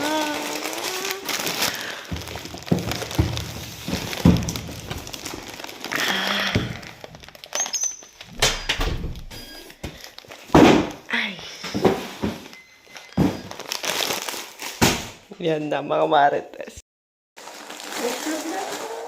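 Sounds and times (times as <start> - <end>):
packaging rustling and tearing: 0.0 - 8.4, 9.9 - 10.6, 12.9 - 15.0, 17.4 - 19.0.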